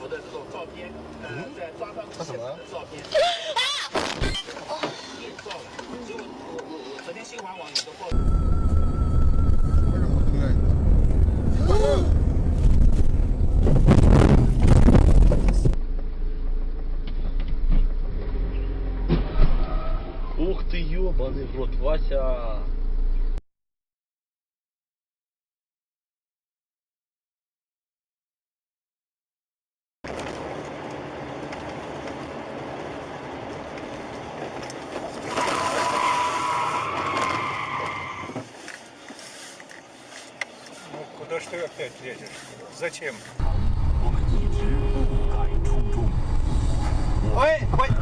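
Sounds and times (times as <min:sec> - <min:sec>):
car engine and road rumble: 0:00.0 - 0:23.4, 0:30.1 - 0:48.0
car hum in motion: 0:08.1 - 0:23.4, 0:43.3 - 0:48.0.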